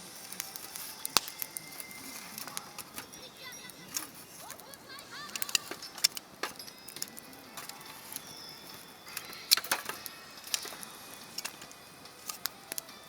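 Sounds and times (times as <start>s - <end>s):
campfire crackling and popping: 0.0s - 13.0s.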